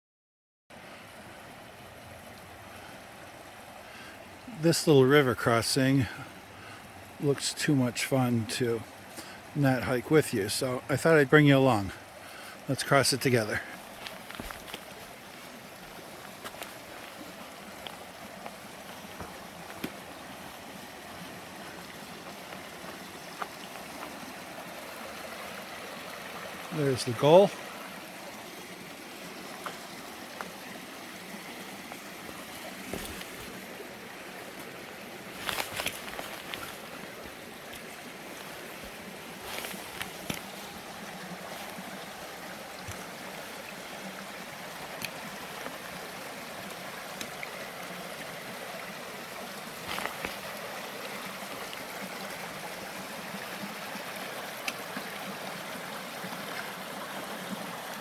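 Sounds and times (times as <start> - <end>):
creek water rushing over rocks: 0.7 - 58.0
knocks and scuffs: 14.0 - 15.5, 16.3 - 20.6, 32.4 - 33.6, 38.5 - 40.8.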